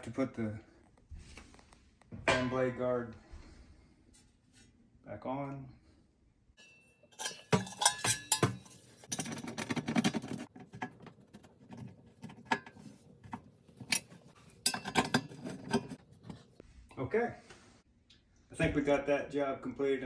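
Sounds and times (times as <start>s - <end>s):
metal clinks and rattles: 6.6s - 10.5s
metal clatter: 6.6s - 11.0s.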